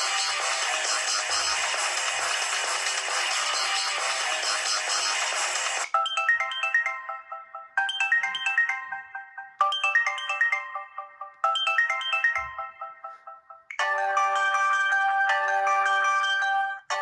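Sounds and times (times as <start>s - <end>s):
chiming phone ringtone: 0.0s - 17.0s
dense chiming ringtone: 5.8s - 17.0s.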